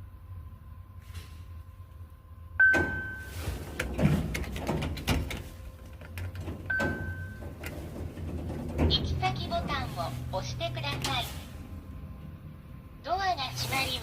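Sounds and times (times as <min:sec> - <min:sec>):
elevator chime: 0:02.6 - 0:03.7, 0:06.5 - 0:07.9
elevator doors clicking and knocking: 0:02.6 - 0:11.3.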